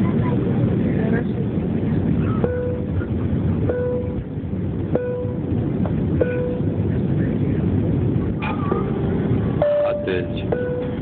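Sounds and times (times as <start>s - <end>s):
airliner cabin noise: 0.0s - 11.0s
short beeps: 2.3s - 2.9s, 3.7s - 4.2s, 5.0s - 5.4s, 6.2s - 6.7s, 9.6s - 11.0s.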